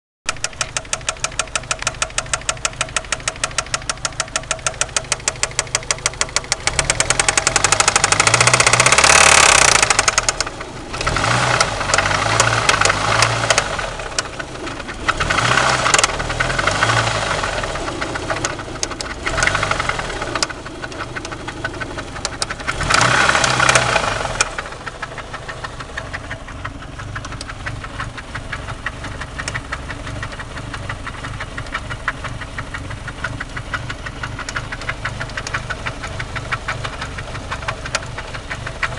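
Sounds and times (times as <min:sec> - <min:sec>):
car engine idling and revving: 0:00.3 - 0:38.9.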